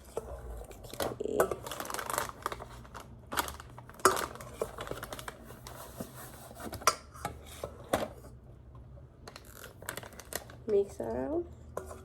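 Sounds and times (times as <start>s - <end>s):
cup and bowl knocking and scraping: 11.7s - 12.0s.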